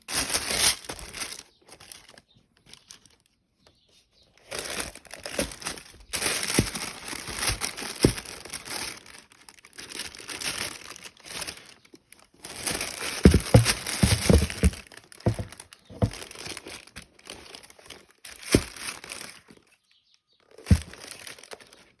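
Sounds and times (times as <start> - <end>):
packaging crinkling and rustling: 0.0 - 22.0
box set down with knocks: 13.2 - 16.2, 20.7 - 21.0.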